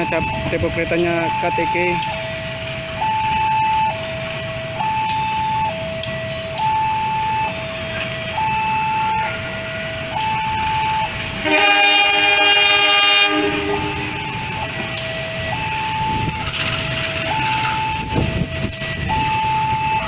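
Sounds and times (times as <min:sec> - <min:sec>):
level crossing alarm: 0:00.0 - 0:20.0
low train rumble: 0:00.0 - 0:20.0
train horn blowing: 0:11.4 - 0:14.7.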